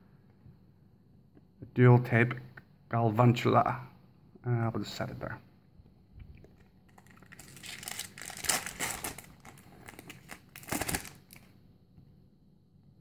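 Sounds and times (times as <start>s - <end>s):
foil wrapper crinkling and tearing: 6.9s - 11.5s.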